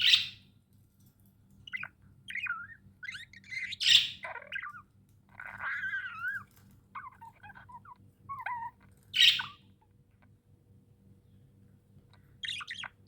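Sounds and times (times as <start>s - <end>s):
budgerigars chirping and warbling: 0.0s - 0.4s, 1.6s - 9.6s, 12.2s - 13.0s
bird loud harsh squawk: 2.3s - 9.6s, 12.4s - 13.0s.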